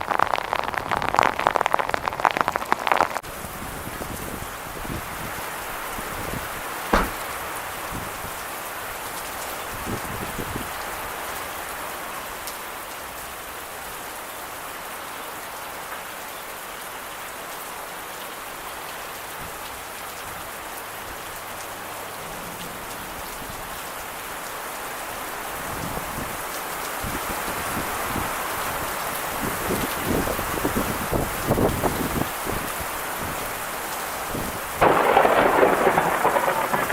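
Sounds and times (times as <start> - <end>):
heavy rain: 0.0 - 36.9
low thump: 7.0 - 7.4.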